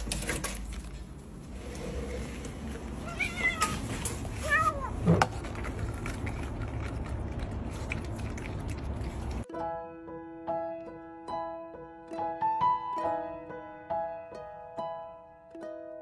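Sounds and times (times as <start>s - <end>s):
low background rumble: 0.9s - 9.4s
cat meowing: 3.0s - 5.1s.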